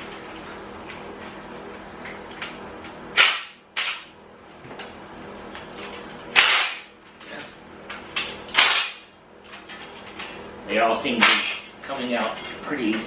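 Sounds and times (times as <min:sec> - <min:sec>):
sharp metallic cracks of tools: 0:03.2 - 0:04.1, 0:06.3 - 0:07.0, 0:08.5 - 0:09.1.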